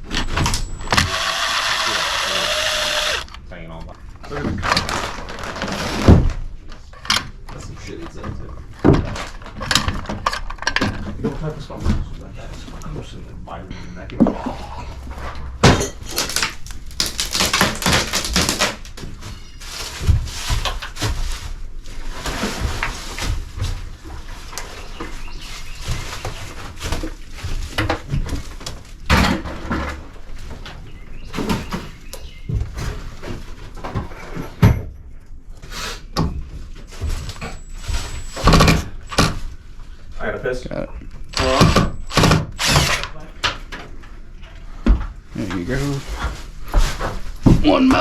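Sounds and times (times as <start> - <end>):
hard objects rattling and clattering: 0.0 - 12.8
wooden knocks and clattering: 4.0 - 12.8, 22.3 - 35.0.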